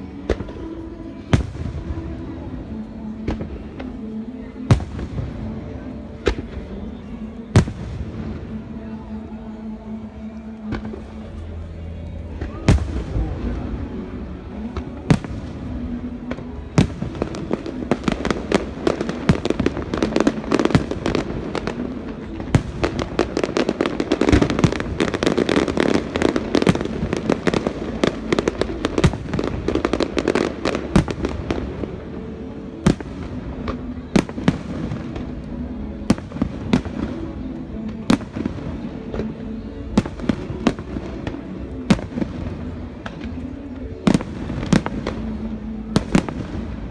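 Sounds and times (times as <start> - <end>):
fireworks bursting in sharp cracks: 0.0 - 4.1, 4.7 - 9.1, 12.3 - 46.9.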